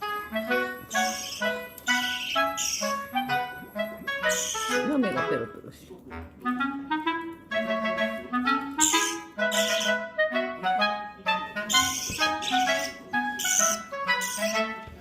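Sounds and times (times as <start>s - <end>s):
wind instrument melody: 0.0s - 15.0s.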